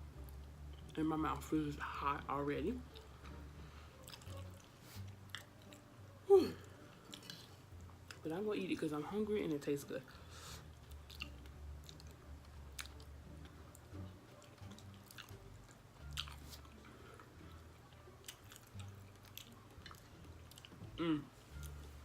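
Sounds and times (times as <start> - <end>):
person chewing food: 2.9 - 6.0, 6.7 - 8.2, 10.6 - 22.0.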